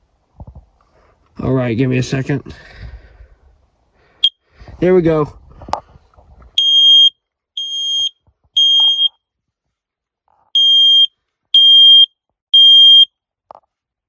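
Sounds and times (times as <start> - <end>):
smoke alarm beeping: 6.6 - 9.2, 10.6 - 13.1.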